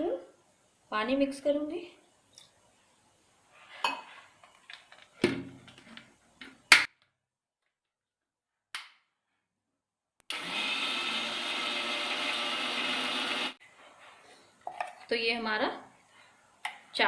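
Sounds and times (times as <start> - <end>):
mixer grinder grinding rice: 10.3 - 13.6.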